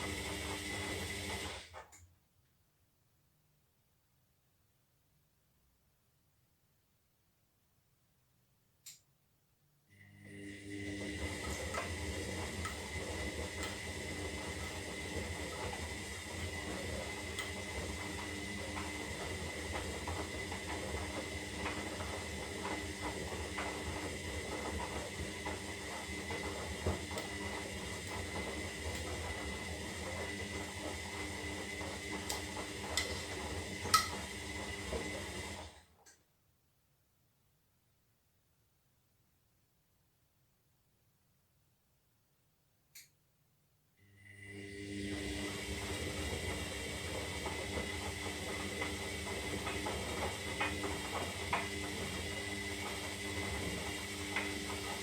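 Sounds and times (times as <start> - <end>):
washing machine running: 0.0 - 1.8, 10.0 - 35.9, 44.1 - 55.0.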